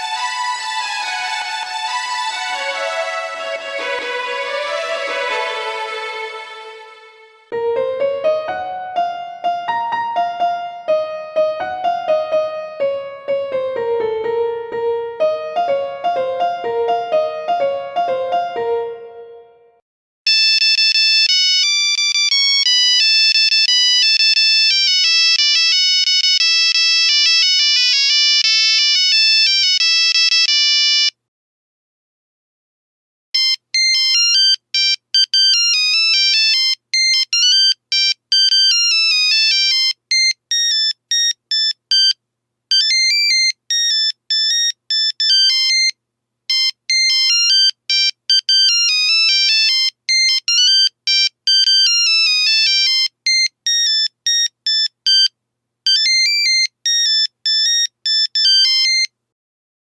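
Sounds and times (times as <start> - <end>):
electronic beep ringtone melody: 33.4 - 45.9, 46.5 - 55.3, 55.9 - 59.1.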